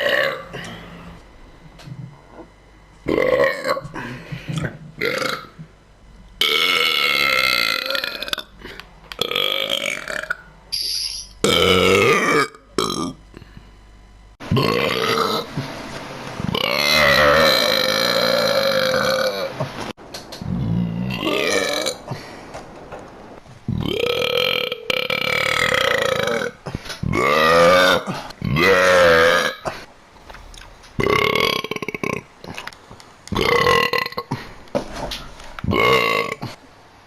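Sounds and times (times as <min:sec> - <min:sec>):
person burping: 0:00.0 - 0:01.2, 0:03.1 - 0:05.6, 0:06.4 - 0:10.5, 0:11.4 - 0:13.5, 0:14.5 - 0:15.4, 0:16.5 - 0:19.5, 0:20.4 - 0:22.0, 0:23.7 - 0:29.7, 0:30.5 - 0:32.6, 0:33.4 - 0:34.5, 0:35.7 - 0:36.6.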